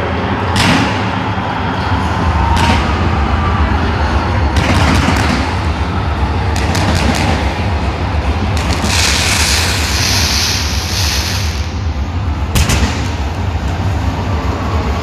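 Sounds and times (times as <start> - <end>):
low rumble: 1.2 - 15.0
fireworks bangs and cracks: 4.5 - 5.7, 6.5 - 7.6, 8.5 - 11.7, 12.5 - 13.4.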